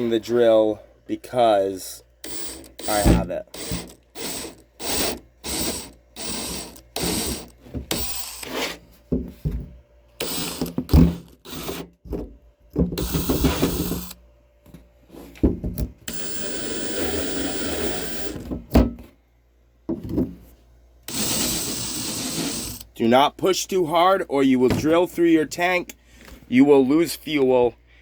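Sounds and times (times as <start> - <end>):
power drill boring holes: 2.2 - 8.5, 10.2 - 11.8, 13.0 - 14.2, 16.1 - 18.4, 21.1 - 22.9.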